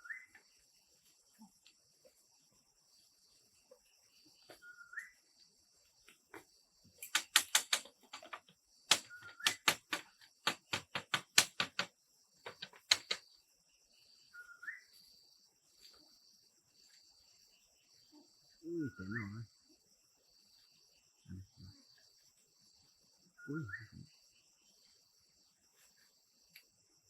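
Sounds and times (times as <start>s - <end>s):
rapid sharp knocks: 7.1s - 13.2s.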